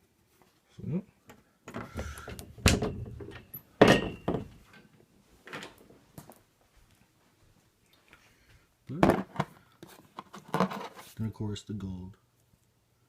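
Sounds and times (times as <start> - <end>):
closet door thudding shut: 1.8 - 4.5
rustling: 9.2 - 11.3.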